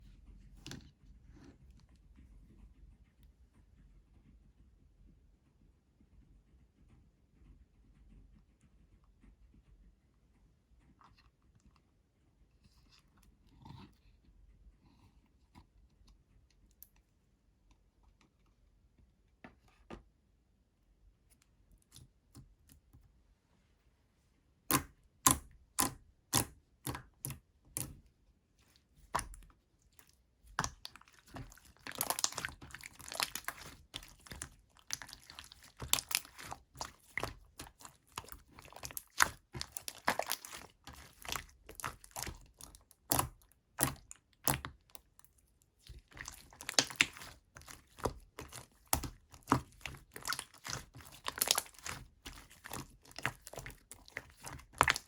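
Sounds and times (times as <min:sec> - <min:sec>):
slime stretching and popping: 0:24.7 - 0:28.0, 0:29.0 - 0:55.0.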